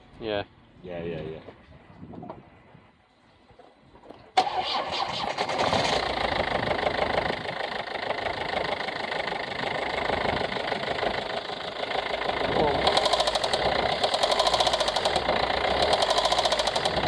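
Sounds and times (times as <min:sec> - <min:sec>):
diesel engine idling with knocking: 0:06.0 - 0:17.0.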